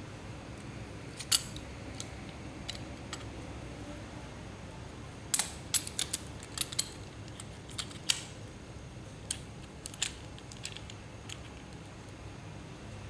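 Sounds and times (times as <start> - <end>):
faint steady hum: 0.0 - 13.0
small hard fittings clicking: 5.3 - 8.4, 9.3 - 11.7.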